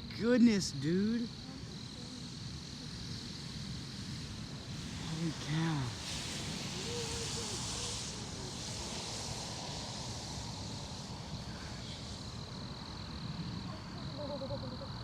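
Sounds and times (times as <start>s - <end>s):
high-pitched insect drone: 0.0s - 15.0s
wind rumble on microphone: 1.4s - 15.0s
faint voice: 6.7s - 8.7s, 13.6s - 15.0s.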